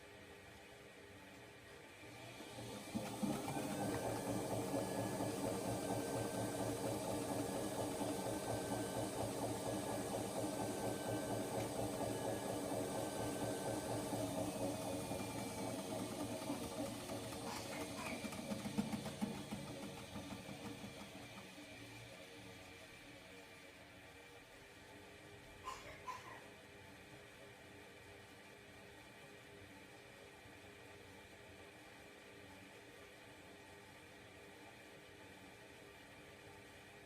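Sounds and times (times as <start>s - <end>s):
washing machine spinning: 1.6s - 26.1s.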